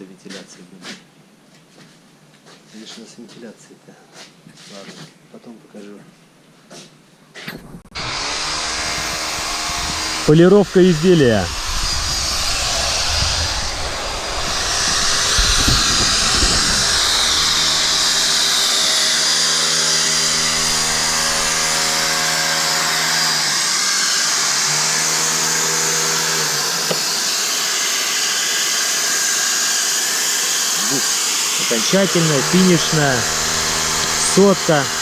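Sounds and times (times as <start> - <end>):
electric polisher on stone: 7.9 - 35.0.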